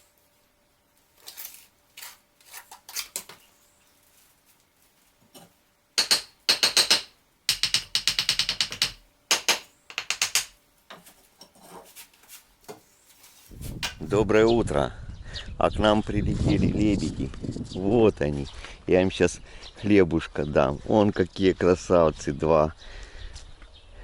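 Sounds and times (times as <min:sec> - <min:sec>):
trowel scraping mortar: 0:01.2 - 0:03.4, 0:10.9 - 0:13.9.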